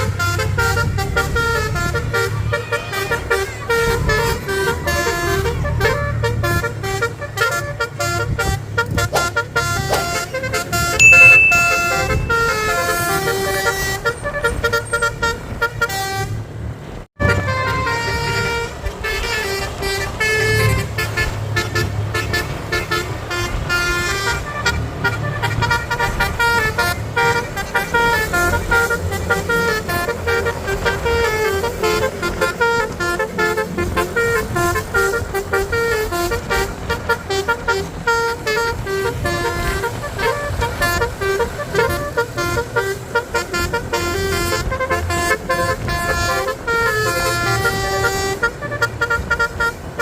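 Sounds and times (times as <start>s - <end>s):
bus horn playing melody: 0.0s - 50.0s.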